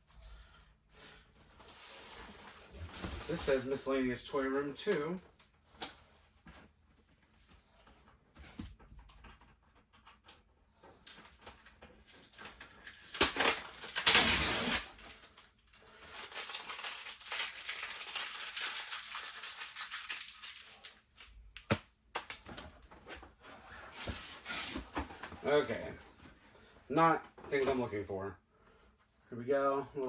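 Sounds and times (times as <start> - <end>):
hands rummaging through toys: 15.0 - 26.4.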